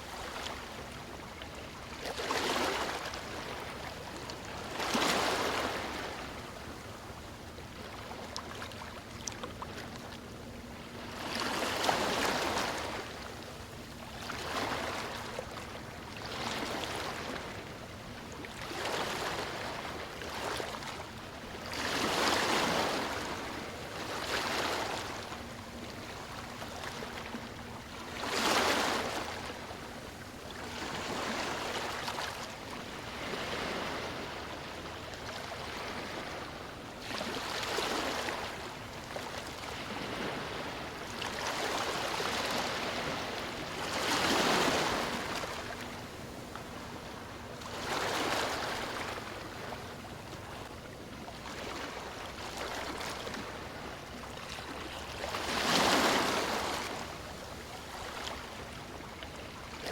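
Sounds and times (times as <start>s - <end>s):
sea waves breaking on beach: 30.7s - 34.7s, 39.4s - 47.0s, 54.5s - 58.6s.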